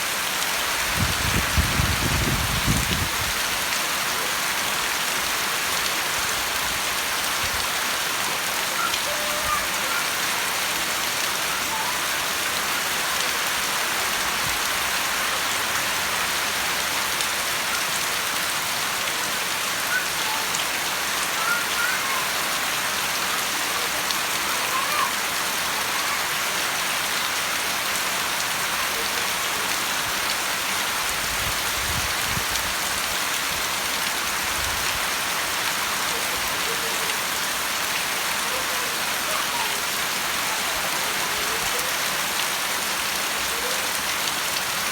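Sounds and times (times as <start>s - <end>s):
steady rain pattering: 0.0s - 44.9s.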